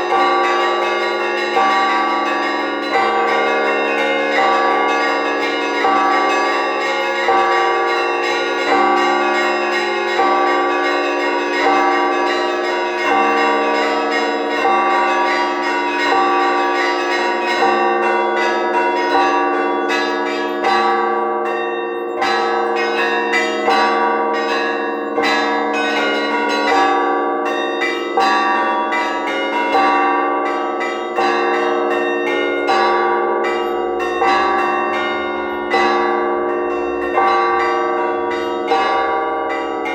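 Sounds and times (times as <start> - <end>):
heavy bell struck steadily: 0.0 - 39.9
small bells chiming rapidly: 0.0 - 39.9.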